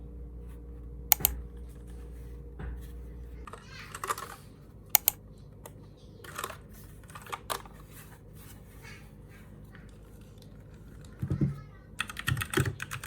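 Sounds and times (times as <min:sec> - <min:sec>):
mechanical keyboard clicks: 0:01.1 - 0:01.4, 0:05.0 - 0:05.2, 0:12.0 - 0:13.0.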